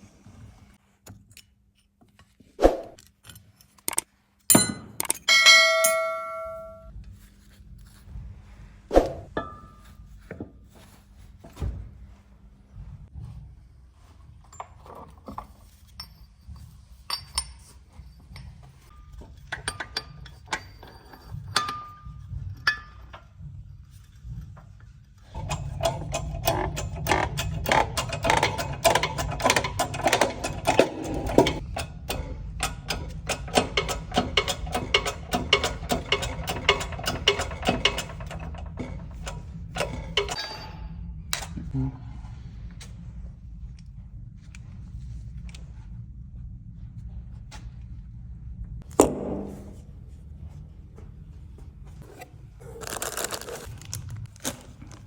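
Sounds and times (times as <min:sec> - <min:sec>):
tool clicks and knocks: 0:03.2 - 0:06.9, 0:25.4 - 0:40.5
low hum: 0:04.6 - 0:10.1
fast mechanical clatter: 0:25.2 - 0:40.4.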